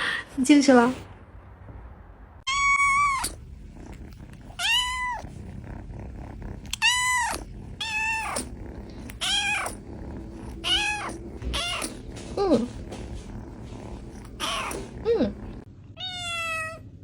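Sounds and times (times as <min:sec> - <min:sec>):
cat yowling: 0:02.5 - 0:03.4, 0:04.6 - 0:05.2, 0:06.7 - 0:08.5, 0:09.2 - 0:09.8, 0:10.6 - 0:12.5, 0:14.3 - 0:15.2, 0:16.0 - 0:16.8.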